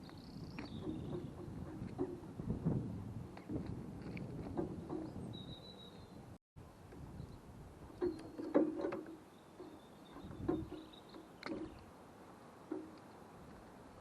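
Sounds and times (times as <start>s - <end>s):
faint high bird chirping: 5.0s - 6.3s, 9.3s - 11.8s.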